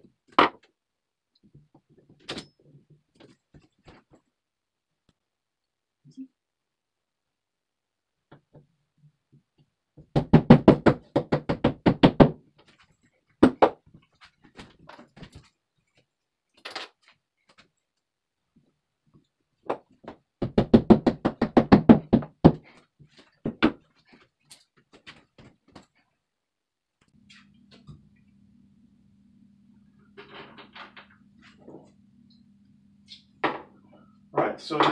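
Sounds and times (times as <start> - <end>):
hammer knocking into drywall: 10.1 - 12.4, 19.7 - 22.6.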